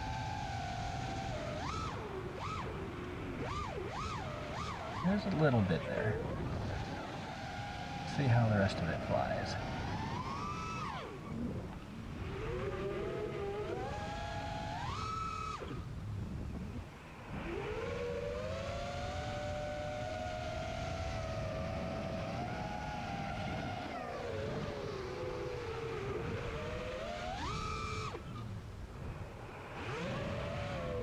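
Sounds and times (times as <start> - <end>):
quadcopter motors whining: 0.0 - 31.0.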